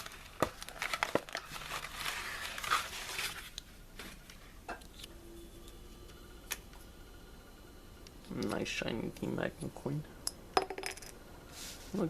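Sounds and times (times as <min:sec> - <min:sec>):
plastic packaging crinkling: 0:00.0 - 0:03.6.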